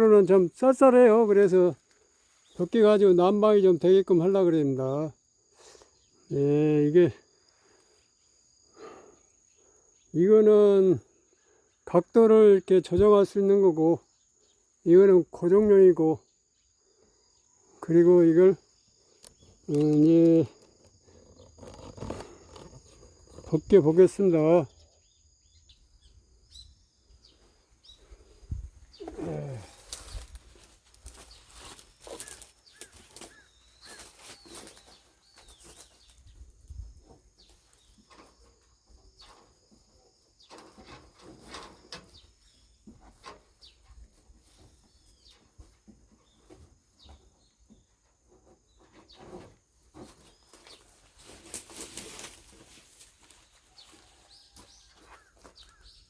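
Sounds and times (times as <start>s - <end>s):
shade net rustling and flapping: 29.7s - 38.6s, 48.9s - 55.9s.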